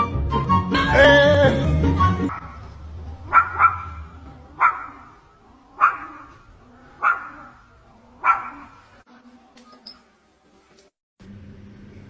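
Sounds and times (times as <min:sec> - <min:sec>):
dog barking: 0:02.3 - 0:09.0.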